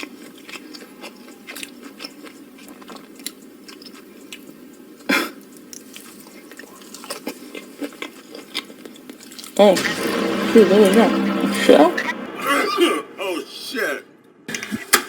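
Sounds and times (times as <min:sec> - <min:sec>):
person chewing and biting: 0:00.0 - 0:04.9, 0:05.5 - 0:09.6.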